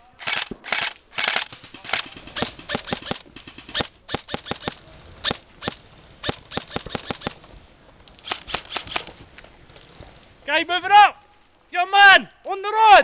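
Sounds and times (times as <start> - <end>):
airsoft guns firing: 0.0 - 4.8, 8.2 - 11.6.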